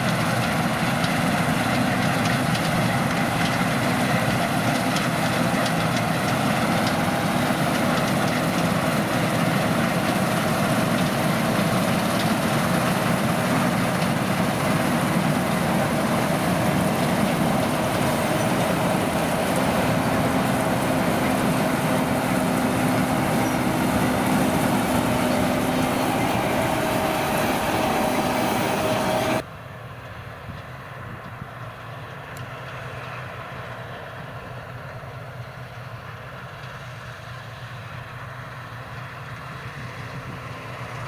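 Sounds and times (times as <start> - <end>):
combine harvester running: 0.0 - 41.0
mechanical whine: 2.1 - 29.4.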